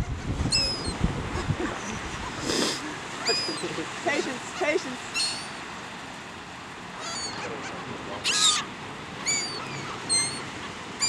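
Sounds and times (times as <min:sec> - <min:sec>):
seagulls squawking: 0:00.0 - 0:05.7, 0:06.9 - 0:11.0.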